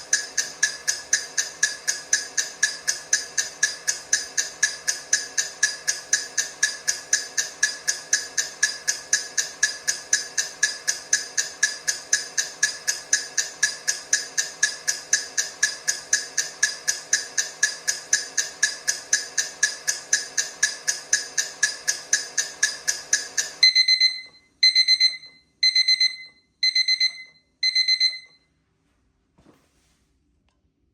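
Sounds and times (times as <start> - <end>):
timer ticking fast: 0.0 - 28.4
digital alarm beeping: 20.6 - 28.4.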